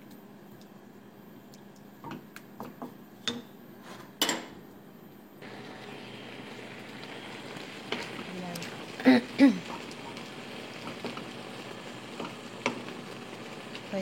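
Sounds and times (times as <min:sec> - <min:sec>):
simmering sauce hissing: 0:05.4 - 0:14.0.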